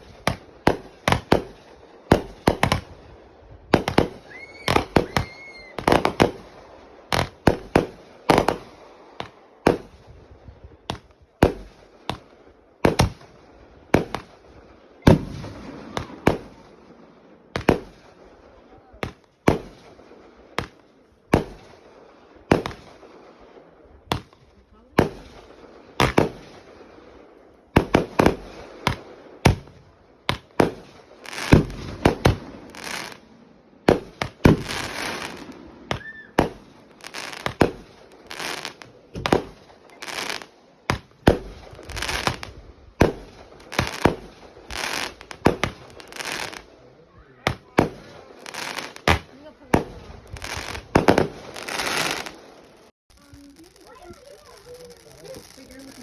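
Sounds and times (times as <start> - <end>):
fireworks bangs: 0.0 - 56.0
fireworks crackling: 0.0 - 56.0.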